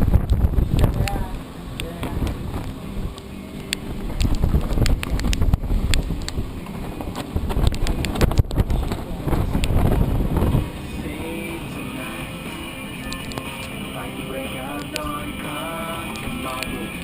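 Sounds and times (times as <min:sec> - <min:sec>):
hurricane wind gusting: 0:00.0 - 0:12.6.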